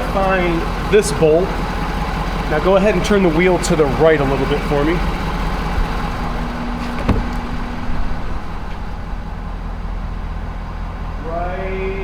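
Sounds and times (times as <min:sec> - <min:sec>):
pickup engine idling: 0:00.0 - 0:12.0.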